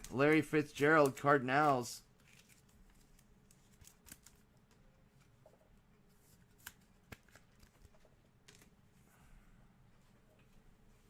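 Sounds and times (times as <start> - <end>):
trading cards clicking and rustling: 0.0 - 5.3, 6.3 - 8.8.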